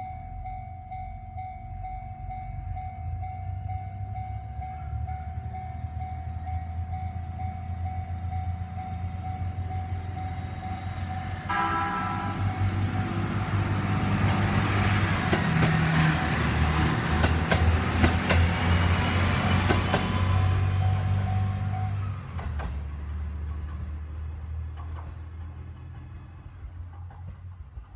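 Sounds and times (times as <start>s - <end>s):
crossing warning bell: 0.0s - 22.4s
train engine drone: 0.0s - 27.9s
wheels clacking over rail joints: 9.2s - 27.9s
train horn: 11.4s - 13.5s.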